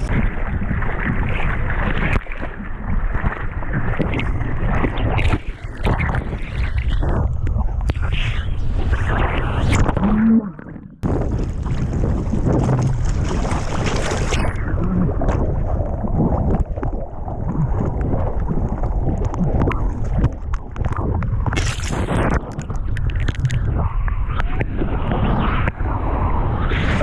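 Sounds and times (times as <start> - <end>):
surf water rushing and splashing: 0.0 - 27.0
wind buffeting microphone: 11.0 - 27.0.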